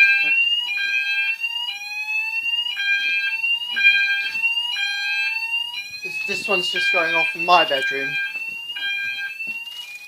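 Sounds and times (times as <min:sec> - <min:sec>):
alarm sounder steady tone: 0:00.0 - 0:10.0
fire alarm rising whoop: 0:00.0 - 0:10.0.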